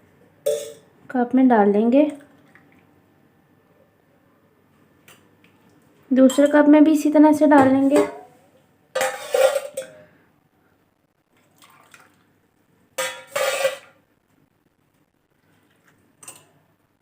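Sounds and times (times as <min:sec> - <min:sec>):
tea pouring into a cup: 0:11.4 - 0:12.3.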